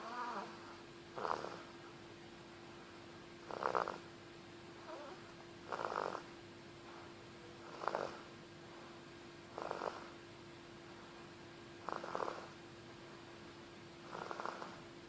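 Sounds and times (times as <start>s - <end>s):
animal snoring: 0.0s - 1.7s, 3.4s - 4.1s, 4.8s - 6.3s, 7.6s - 8.3s, 9.5s - 10.2s, 11.8s - 12.6s, 14.0s - 14.9s
faint hum: 0.0s - 15.0s.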